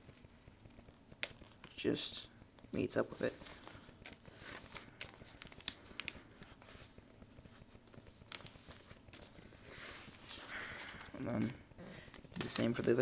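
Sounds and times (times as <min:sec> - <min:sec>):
paper rustling and crinkling: 0:03.0 - 0:11.6, 0:12.2 - 0:13.0.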